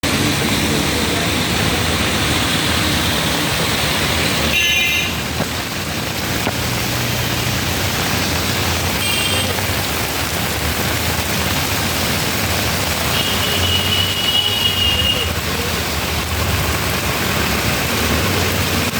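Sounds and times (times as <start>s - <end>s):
heavy rain: 0.0s - 18.9s
traffic on wet road: 0.0s - 18.9s.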